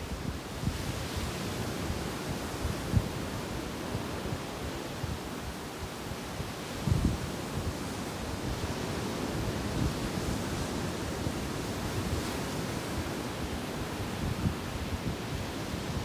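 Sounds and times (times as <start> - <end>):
wind buffeting microphone: 0.1 - 16.0.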